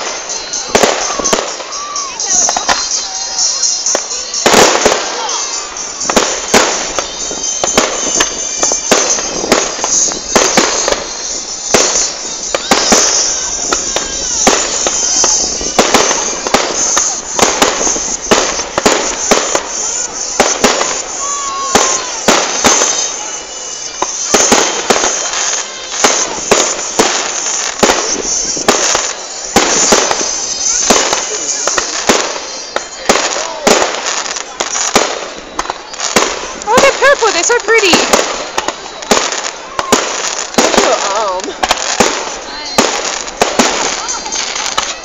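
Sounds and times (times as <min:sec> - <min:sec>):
fireworks bangs and crackles: 0:00.0 - 0:45.0
fireworks rumble: 0:00.0 - 0:45.0.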